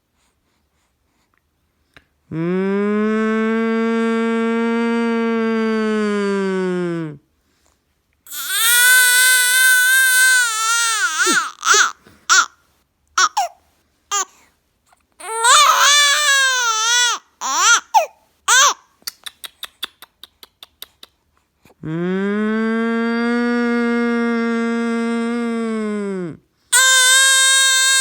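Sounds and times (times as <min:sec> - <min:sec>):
woman humming: 0:02.3 - 0:07.2, 0:21.8 - 0:26.4
baby crying: 0:08.3 - 0:12.5, 0:13.2 - 0:14.3, 0:15.2 - 0:18.8, 0:26.8 - 0:28.0.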